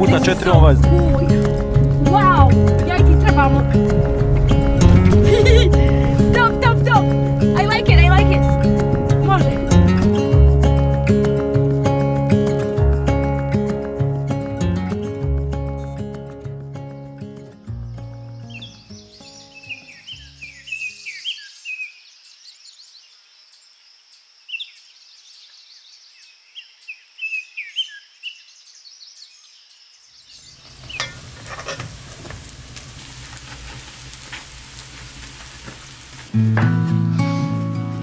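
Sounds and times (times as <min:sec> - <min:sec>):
guitar music: 0:00.0 - 0:19.4, 0:36.3 - 0:38.0
small birds chirping: 0:18.4 - 0:36.4
food sizzling in a pan: 0:30.3 - 0:38.0.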